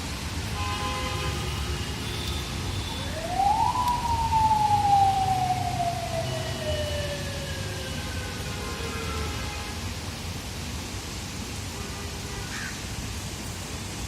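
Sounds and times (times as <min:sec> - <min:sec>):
rain hiss: 0:00.0 - 0:14.0
siren wailing: 0:02.7 - 0:08.5.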